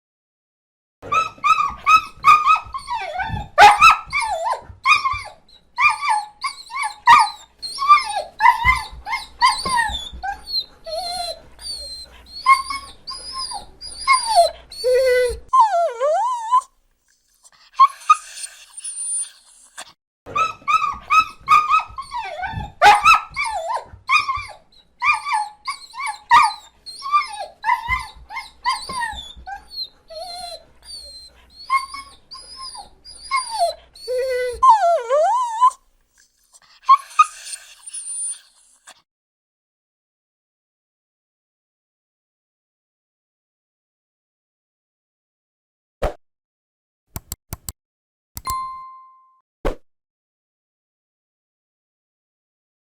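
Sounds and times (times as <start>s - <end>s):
dog whimpering and whining: 1.0s - 16.7s, 17.7s - 35.8s, 36.8s - 39.0s.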